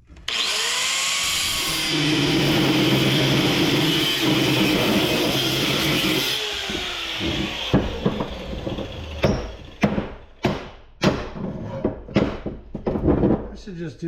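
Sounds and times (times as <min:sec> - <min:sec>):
machine winding down: 0:00.3 - 0:09.8
hammer striking scrap metal: 0:06.0 - 0:11.4.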